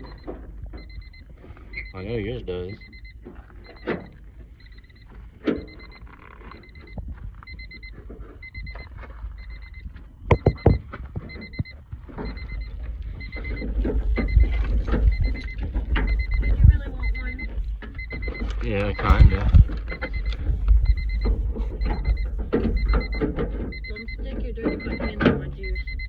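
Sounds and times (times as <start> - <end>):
car warning chime beeping: 0.0 - 26.0
low handling rumbles: 9.2 - 26.0
sharp knocks: 10.3 - 10.8.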